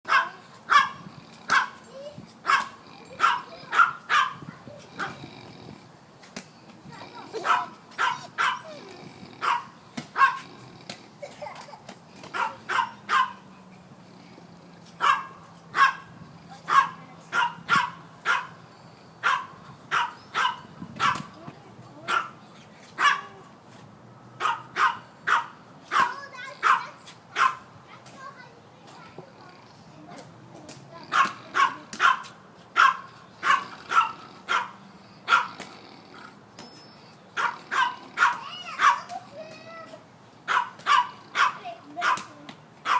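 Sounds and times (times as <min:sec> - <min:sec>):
dog barking: 0:00.1 - 0:01.8, 0:02.4 - 0:05.3, 0:07.3 - 0:08.8, 0:09.4 - 0:10.5, 0:12.3 - 0:13.5, 0:15.0 - 0:16.1, 0:16.7 - 0:18.6, 0:19.2 - 0:21.3, 0:22.1 - 0:22.4, 0:23.0 - 0:23.4, 0:24.4 - 0:27.7, 0:31.0 - 0:35.6, 0:37.4 - 0:39.2, 0:40.5 - 0:42.9.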